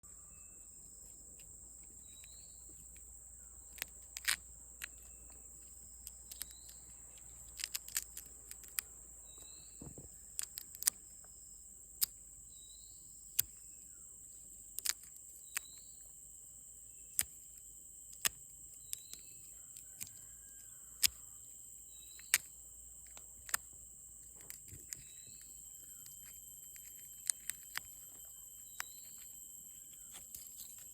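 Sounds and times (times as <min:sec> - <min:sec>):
short insect chirp: 0:00.0 - 0:30.9
sharp snaps and clicks: 0:03.7 - 0:11.3, 0:12.0 - 0:12.2, 0:13.3 - 0:13.6, 0:14.7 - 0:16.1, 0:17.1 - 0:21.2, 0:22.0 - 0:30.9
high-pitched insect drone: 0:18.8 - 0:30.9.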